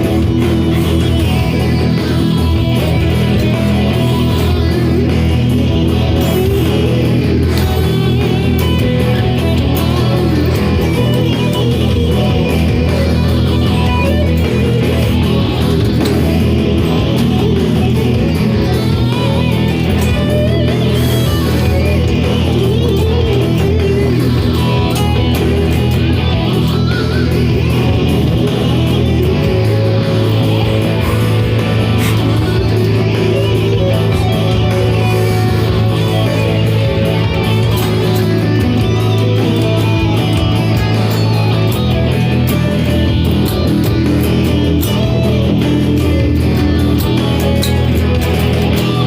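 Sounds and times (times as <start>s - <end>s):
bent guitar notes: 0.0s - 49.0s
electric guitar picking: 0.0s - 49.0s.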